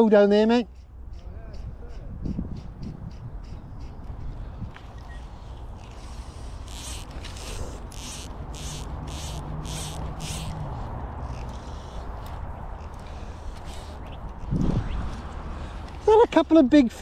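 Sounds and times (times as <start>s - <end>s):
short hissing strokes: 5.1s - 14.2s
flying insect buzzing: 5.8s - 14.2s.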